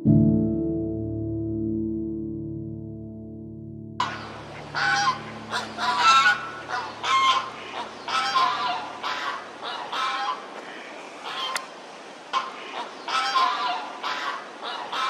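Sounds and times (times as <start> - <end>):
geese honking: 4.0 - 10.4, 12.4 - 15.0.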